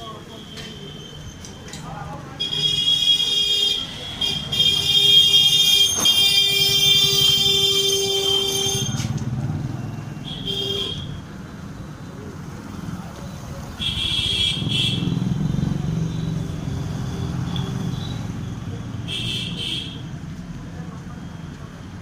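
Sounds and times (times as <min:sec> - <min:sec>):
traffic engine rumble: 0:00.0 - 0:22.0
car horn honks: 0:02.4 - 0:09.1, 0:10.2 - 0:11.2, 0:13.8 - 0:15.2, 0:19.1 - 0:20.0.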